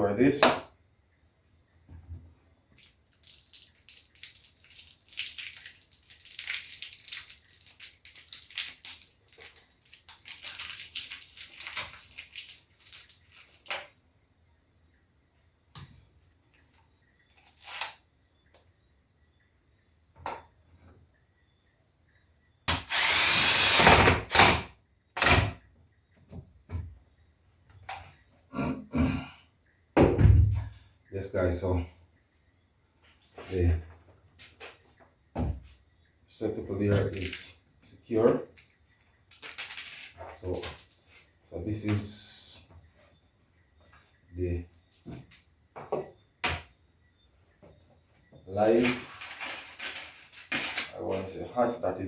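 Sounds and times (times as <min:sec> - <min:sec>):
parts scraping and clicking: 0:16.7 - 0:18.0
electric drill running: 0:22.7 - 0:24.6.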